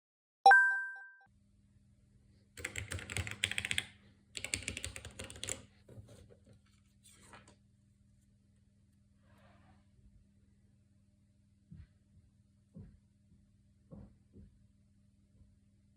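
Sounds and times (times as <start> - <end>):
mechanical keyboard keys clattering: 2.6 - 3.8, 4.4 - 5.6.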